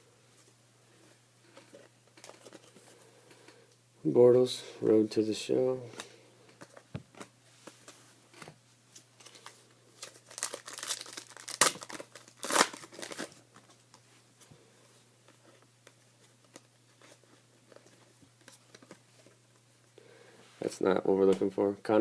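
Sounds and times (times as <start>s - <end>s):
foil wrapper tearing and crinkling: 9.3s - 13.4s.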